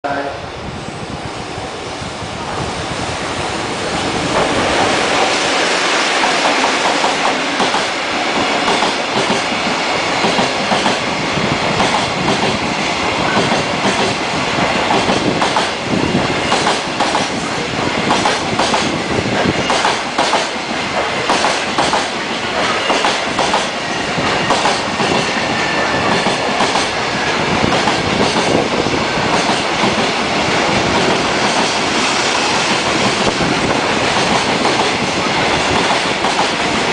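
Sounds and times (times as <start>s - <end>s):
train wheels clattering over rail joints: 6.2s - 11.1s, 11.7s - 12.6s, 13.3s - 27.0s, 27.6s - 30.2s, 30.8s - 36.9s.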